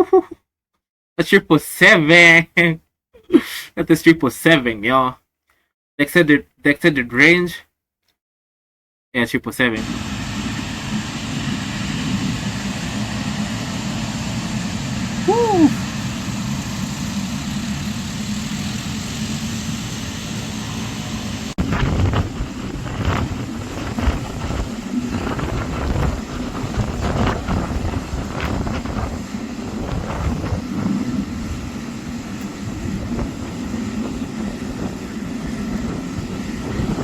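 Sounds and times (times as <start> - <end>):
jet airliner rumble: 9.8 - 37.0.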